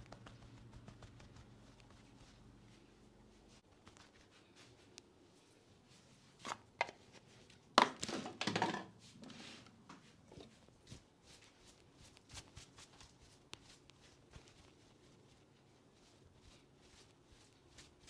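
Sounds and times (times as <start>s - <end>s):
soft taps on head: 0.0s - 2.0s
fast rubbing and crackling: 0.0s - 2.6s.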